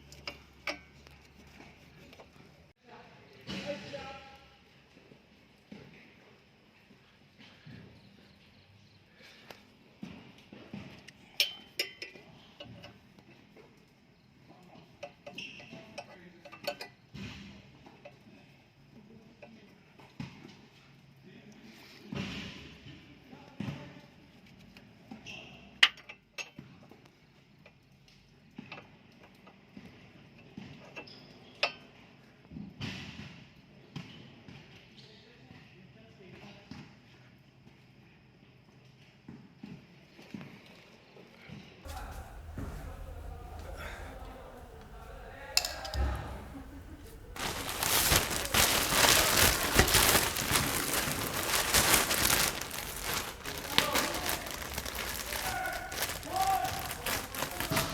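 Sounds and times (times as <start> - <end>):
short rustle: 41.9 - 57.9.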